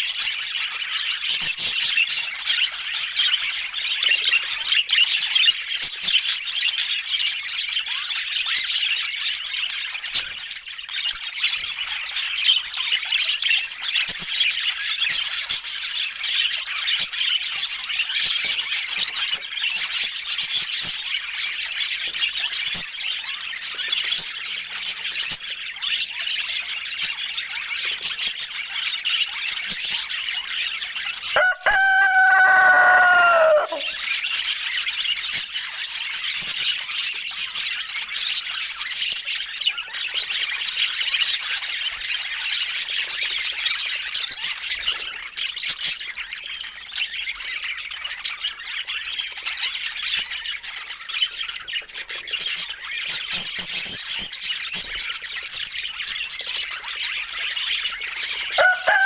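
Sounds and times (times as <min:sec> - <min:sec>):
budgerigars chattering and warbling: 0:00.0 - 0:59.0
loud long falling bird call: 0:31.4 - 0:34.0, 0:58.5 - 0:59.0.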